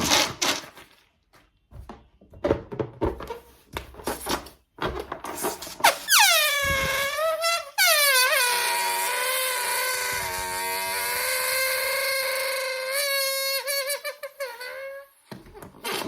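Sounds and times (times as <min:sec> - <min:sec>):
balloon deflating squeal: 0:05.8 - 0:16.0.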